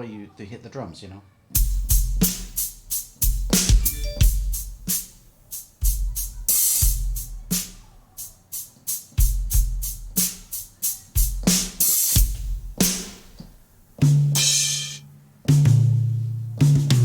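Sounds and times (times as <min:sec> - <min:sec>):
kick drum thumps: 0:01.6 - 0:02.6, 0:03.2 - 0:04.9, 0:11.2 - 0:14.4
snare and hi-hat strokes: 0:01.6 - 0:17.0
cymbal crash: 0:14.3 - 0:15.0.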